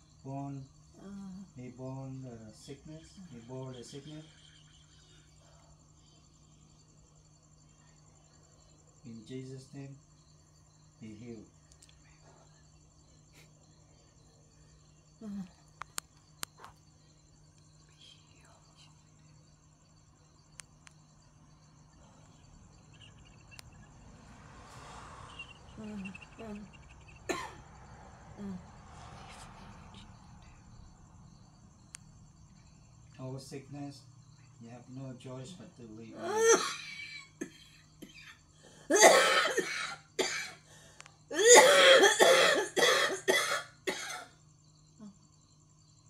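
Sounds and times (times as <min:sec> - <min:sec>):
person coughing: 0:27.3 - 0:27.6, 0:36.2 - 0:38.3, 0:38.9 - 0:40.6, 0:41.3 - 0:44.3.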